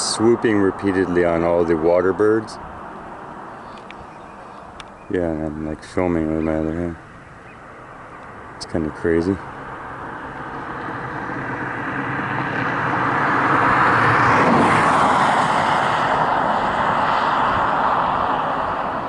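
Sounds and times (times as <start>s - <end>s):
vehicle driving past: 6.2s - 19.0s.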